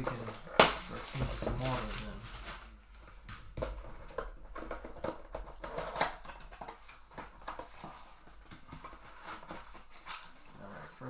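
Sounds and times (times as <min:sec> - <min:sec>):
cardboard box rustling: 0:00.0 - 0:02.8
cardboard tearing: 0:00.0 - 0:02.8.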